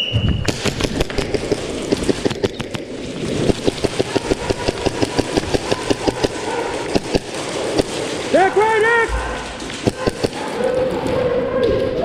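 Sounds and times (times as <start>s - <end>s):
airsoft guns firing: 0.4s - 8.7s, 9.7s - 10.6s.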